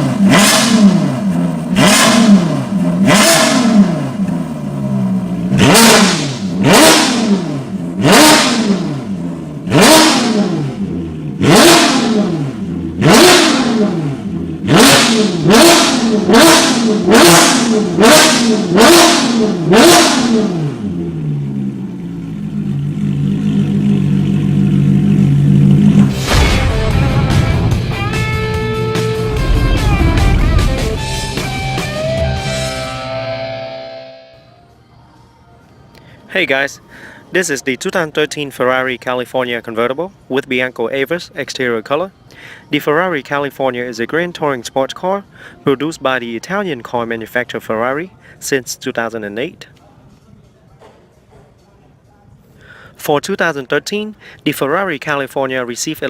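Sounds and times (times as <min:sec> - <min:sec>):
car engine idling: 0:00.0 - 0:33.8
car engine revving: 0:00.0 - 0:34.3.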